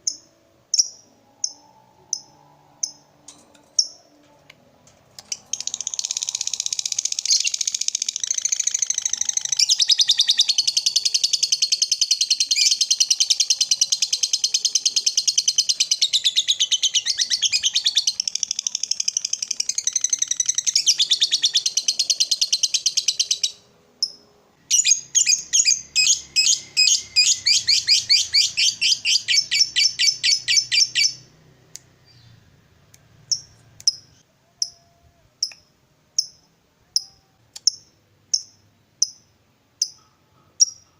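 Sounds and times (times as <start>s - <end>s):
lovebird chattering trill: 5.2s - 31.2s
lovebird single chirps: 5.2s - 31.2s.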